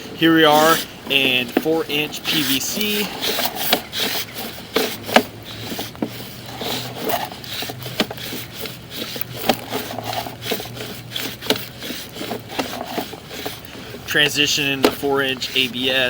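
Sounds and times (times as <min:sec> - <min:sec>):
cable scraping inside pipe: 0:00.0 - 0:16.0.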